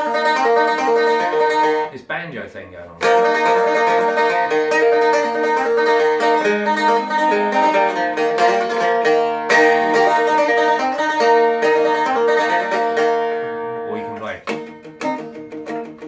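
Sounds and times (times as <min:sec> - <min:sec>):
stick dulcimer played fast: 0:03.0 - 0:13.4.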